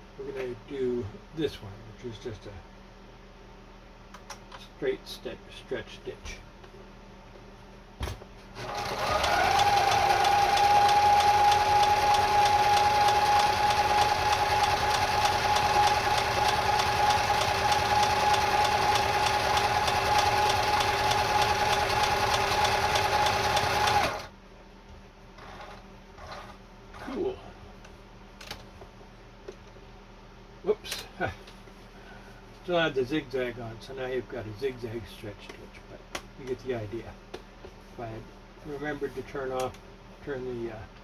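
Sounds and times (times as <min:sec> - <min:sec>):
sewing machine motor whine: 0:08.6 - 0:24.3.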